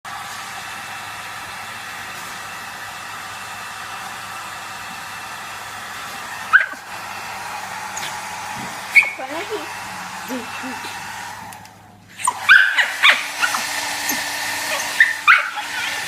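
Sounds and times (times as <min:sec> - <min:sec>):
hair dryer running: 0:00.0 - 0:16.0
dog yelp: 0:06.5 - 0:06.8, 0:08.9 - 0:09.2, 0:12.2 - 0:13.6, 0:14.2 - 0:16.0.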